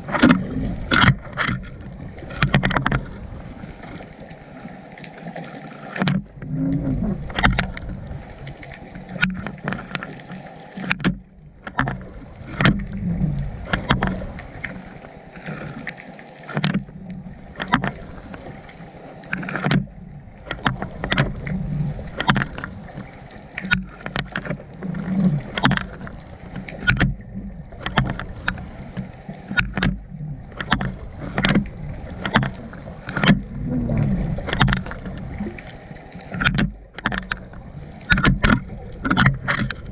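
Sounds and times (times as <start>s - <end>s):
muffled underwater rumble: 0.0s - 39.9s
sharp clicks and knocks: 0.1s - 3.1s, 10.8s - 13.0s, 16.5s - 16.9s, 19.3s - 19.9s, 20.5s - 22.8s, 23.6s - 24.6s, 25.5s - 27.2s, 27.8s - 30.0s, 30.6s - 33.5s, 34.4s - 39.9s.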